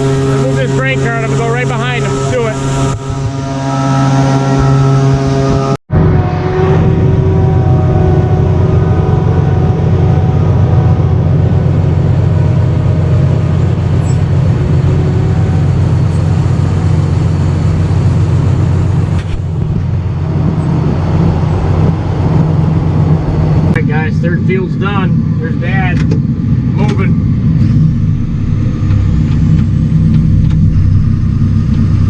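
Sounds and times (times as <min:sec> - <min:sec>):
diesel tractor engine running: 0:00.0 - 0:32.0.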